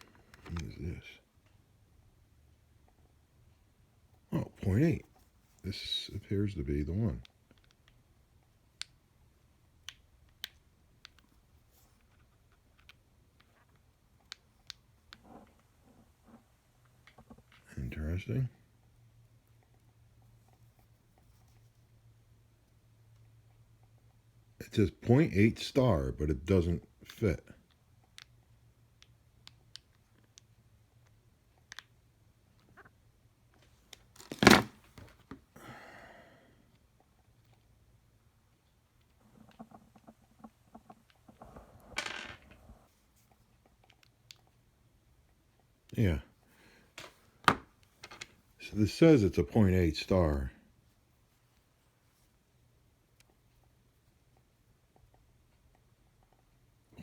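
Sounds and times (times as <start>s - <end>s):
plastic case handled: 34.0s - 35.5s, 47.0s - 48.4s.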